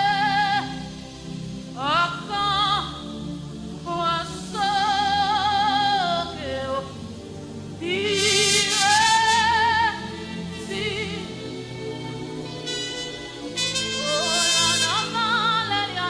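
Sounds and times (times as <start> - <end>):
person singing with vibrato: 0.0 - 1.0, 3.8 - 7.0, 7.8 - 16.0
sustained instrumental chords: 0.0 - 16.0.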